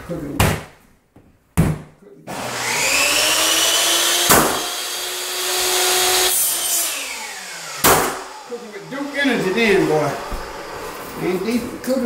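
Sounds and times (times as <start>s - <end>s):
power tool motor whining: 2.3s - 12.0s
sharp knock: 4.3s - 4.6s, 7.8s - 8.2s.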